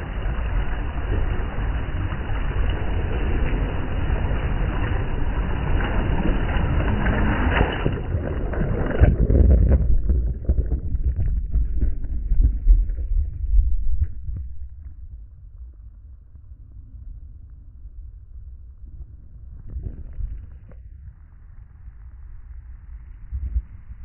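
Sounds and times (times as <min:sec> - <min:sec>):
sea waves washing: 0:00.0 - 0:13.9
wind buffeting microphone: 0:00.0 - 0:15.8
faint crackles: 0:00.0 - 0:24.0.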